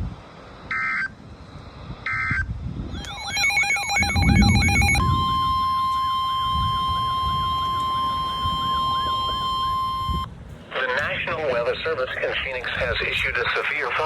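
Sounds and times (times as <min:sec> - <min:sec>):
steady alarm tone: 0:02.1 - 0:10.3
warbling electronic tone: 0:02.9 - 0:10.3.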